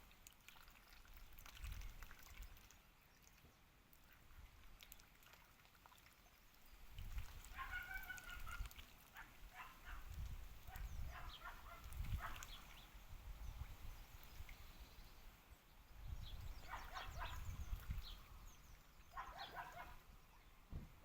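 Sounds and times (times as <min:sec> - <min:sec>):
dogs barking: 0:07.5 - 0:08.6, 0:09.2 - 0:10.1, 0:10.7 - 0:12.5, 0:16.6 - 0:17.5, 0:19.1 - 0:20.0.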